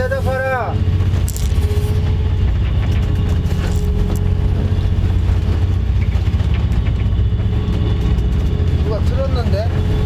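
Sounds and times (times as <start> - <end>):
boat engine rumbling: 0.0 - 10.0
faint steady whine: 0.0 - 10.0.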